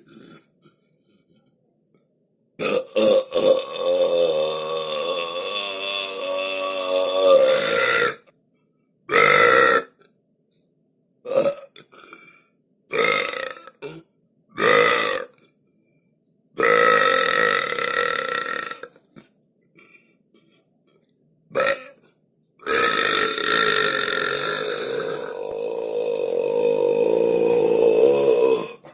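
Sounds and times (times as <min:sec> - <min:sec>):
person burping: 0:00.0 - 0:00.5, 0:02.6 - 0:08.3, 0:09.1 - 0:10.0, 0:11.3 - 0:15.4, 0:16.6 - 0:20.1, 0:21.5 - 0:28.9.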